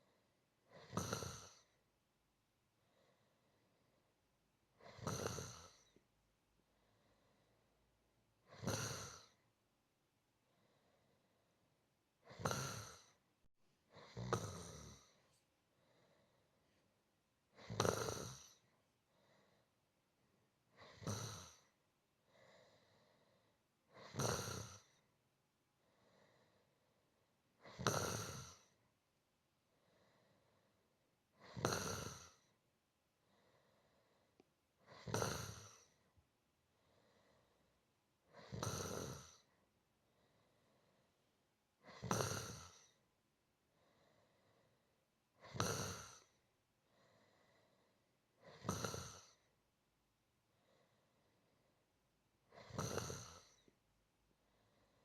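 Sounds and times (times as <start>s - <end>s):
person snoring softly: 0.0s - 1.9s, 4.7s - 6.1s, 8.4s - 9.5s, 12.2s - 13.3s, 13.9s - 16.8s, 17.5s - 19.7s, 20.7s - 25.2s, 27.6s - 28.8s, 29.7s - 32.6s, 33.2s - 36.2s, 36.8s - 41.2s, 41.8s - 43.1s, 43.8s - 49.6s, 52.4s - 53.8s
quiet breaths: 0.0s - 55.0s.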